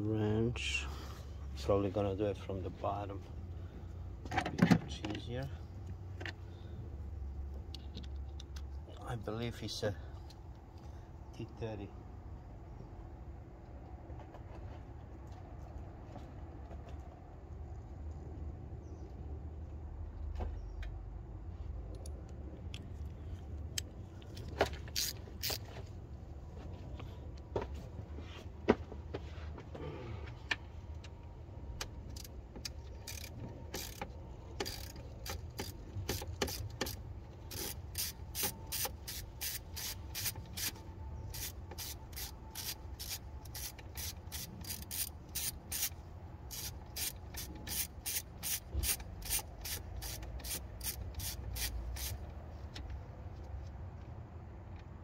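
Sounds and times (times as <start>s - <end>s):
ratchet wrench clicking: 24.8s - 25.7s, 32.1s - 52.2s.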